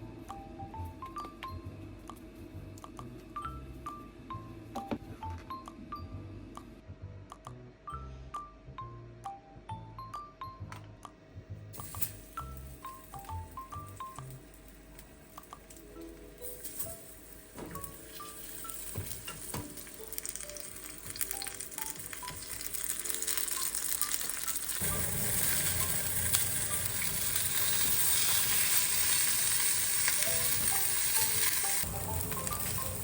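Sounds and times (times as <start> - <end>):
soft background music: 0.0 - 33.0
food sizzling in frying pan: 18.0 - 33.0.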